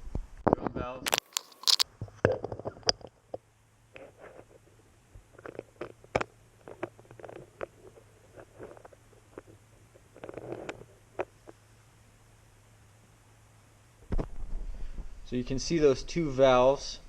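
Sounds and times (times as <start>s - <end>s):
metal parts and tools clicking: 1.1s - 1.8s.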